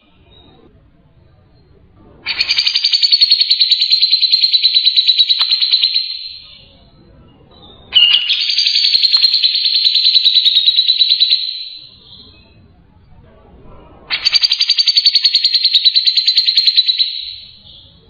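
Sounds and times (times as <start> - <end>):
bird singing high rapid trills: 2.3 - 12.6, 14.1 - 18.0.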